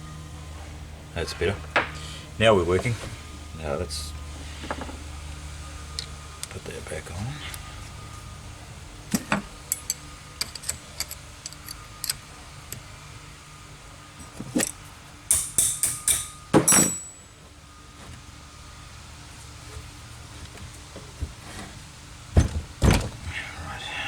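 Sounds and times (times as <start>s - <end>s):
hand tools clinking on metal: 14.6s - 17.3s.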